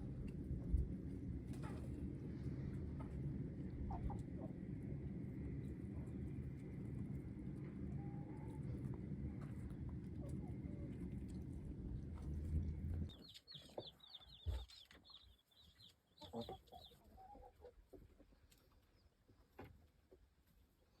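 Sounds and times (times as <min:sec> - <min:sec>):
low rumble: 0:00.0 - 0:13.3
chicks peeping: 0:00.1 - 0:21.0
chicken clucks: 0:01.5 - 0:20.2.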